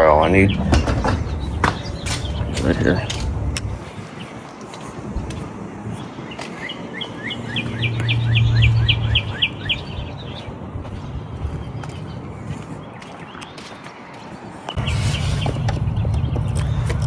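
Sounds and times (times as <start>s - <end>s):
low steady hum: 0.0s - 3.9s
songbird chirping: 0.0s - 17.0s.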